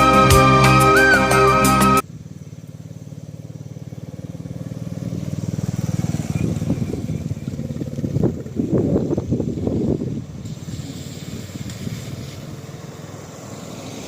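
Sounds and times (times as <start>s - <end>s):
background music: 0.0s - 2.0s
motorcycle engine running: 2.0s - 10.7s.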